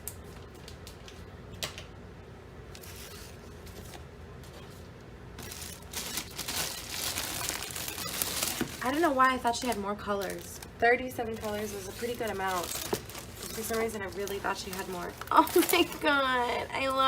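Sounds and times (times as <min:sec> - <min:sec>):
packaging rustling and crinkling: 0:02.8 - 0:04.8, 0:05.4 - 0:17.0.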